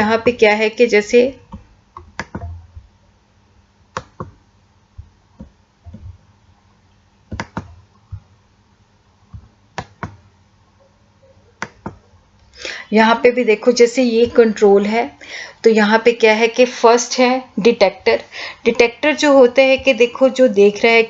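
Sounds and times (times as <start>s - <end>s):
sharp clicks in pairs: 1.5s - 2.5s, 3.9s - 4.4s, 7.3s - 7.7s, 9.8s - 10.2s, 11.6s - 12.0s.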